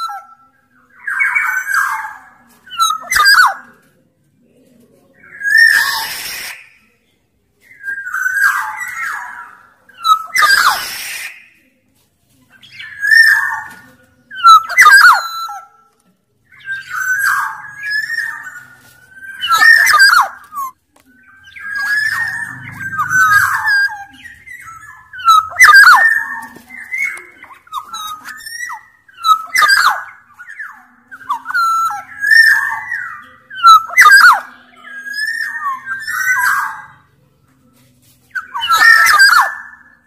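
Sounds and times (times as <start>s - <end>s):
bird fluty whistled call: 5.4s - 6.9s, 7.7s - 11.6s, 14.4s - 15.7s, 16.6s - 36.9s, 38.3s - 40.0s
bird rasping call: 21.5s - 27.2s.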